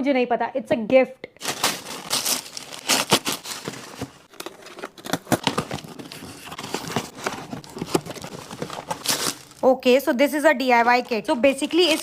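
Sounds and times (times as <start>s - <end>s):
packaging tearing: 1.4s - 9.6s, 11.5s - 12.0s
packaging crinkling and rustling: 1.4s - 9.7s, 10.6s - 12.0s.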